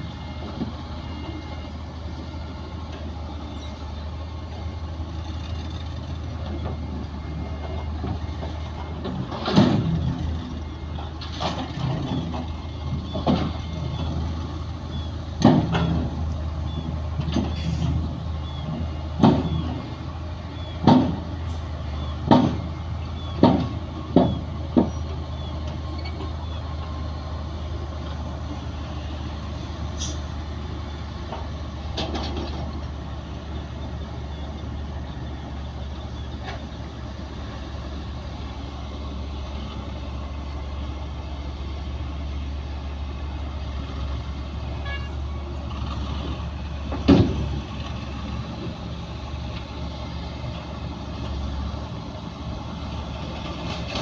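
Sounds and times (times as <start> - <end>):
bulldozer diesel engine running: 0.0 - 54.0.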